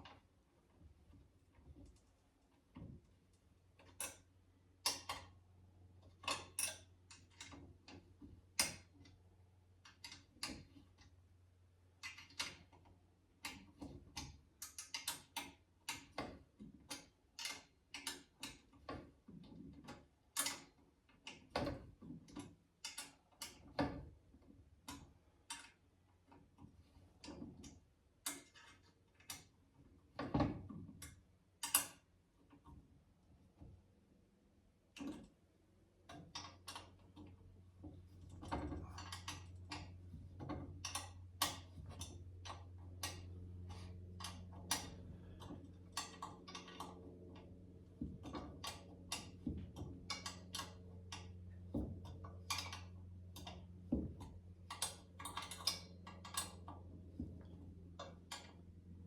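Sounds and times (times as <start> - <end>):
metal parts clicking and clinking: 38.2 - 40.0, 40.8 - 47.4, 48.2 - 51.4, 54.6 - 56.7.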